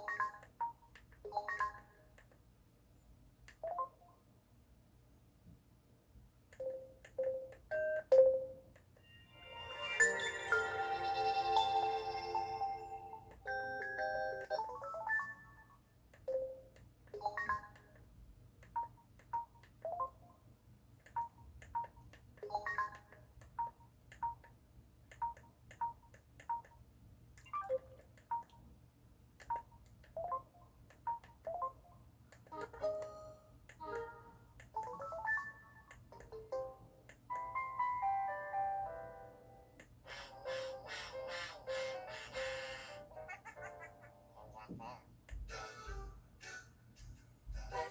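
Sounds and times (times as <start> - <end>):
electronic beeps and chimes: 9.0 - 15.4.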